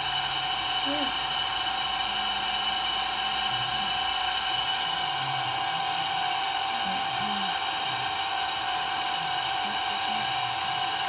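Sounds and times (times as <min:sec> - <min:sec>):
steady machine-like whine: 0:00.0 - 0:11.0.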